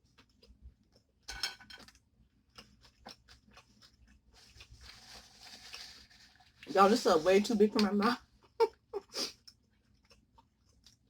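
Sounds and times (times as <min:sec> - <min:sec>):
chewing clicks and mouth smacks: 0:00.0 - 0:01.1, 0:01.8 - 0:04.9, 0:09.3 - 0:11.0
biting into a sandwich: 0:01.8 - 0:06.6.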